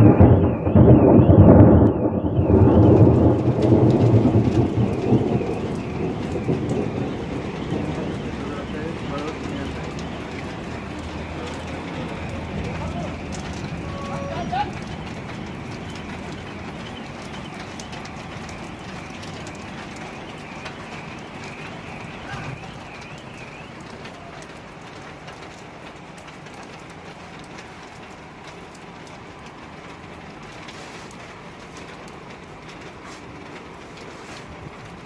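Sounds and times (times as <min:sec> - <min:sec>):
bird chirping: 0:00.0 - 0:24.4
heavy rain: 0:00.0 - 0:35.0
drops ticking close by: 0:02.8 - 0:30.5.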